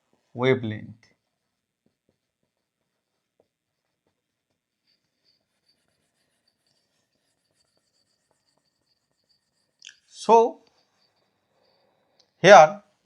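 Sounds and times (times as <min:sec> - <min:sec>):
pen scratching on paper: 0:01.2 - 0:12.2.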